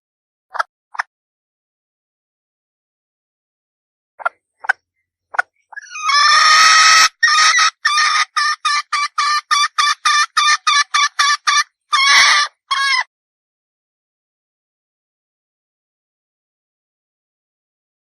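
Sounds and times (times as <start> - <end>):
hen clucking: 5.4 - 13.1
hen calling: 5.7 - 13.1.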